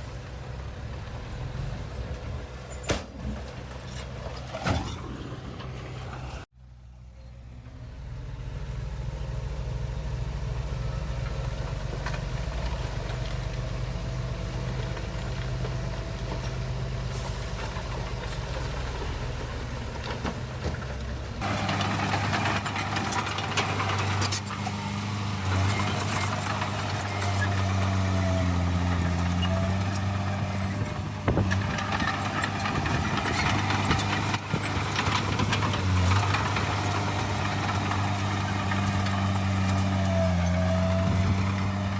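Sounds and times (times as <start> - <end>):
heavy machinery diesel engine: 0.0 - 41.9.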